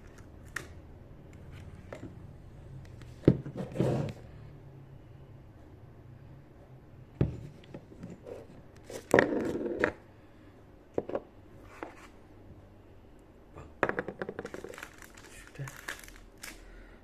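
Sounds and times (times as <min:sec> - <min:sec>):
packaging scraping rustle: 0:14.4 - 0:16.6.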